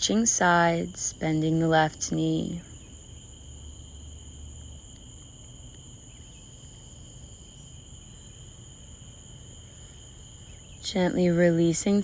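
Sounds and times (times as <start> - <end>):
insects trilling: 0.0 - 12.0.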